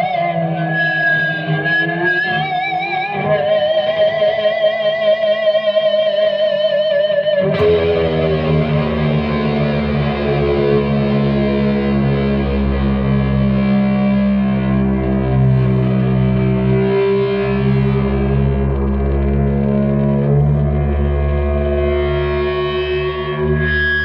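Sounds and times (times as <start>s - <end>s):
electric guitar feedback: 0.0s - 24.0s
low guitar chord droning: 7.4s - 24.0s.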